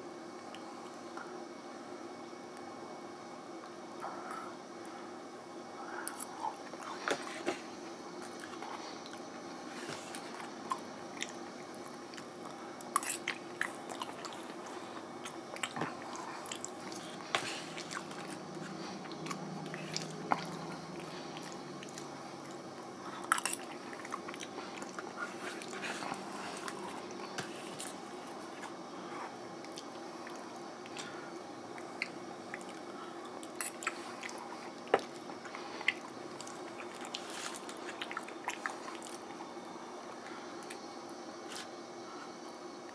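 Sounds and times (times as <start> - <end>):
steady low hum: 0.0 - 42.9
person chewing wet mouth sounds: 10.7 - 28.0, 29.6 - 39.4.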